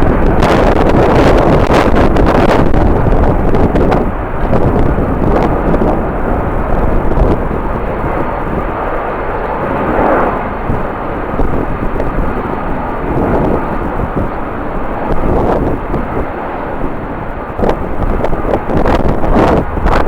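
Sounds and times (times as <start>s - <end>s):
airliner engines rumbling: 0.0s - 20.0s
wind gusting on microphone: 0.0s - 20.0s.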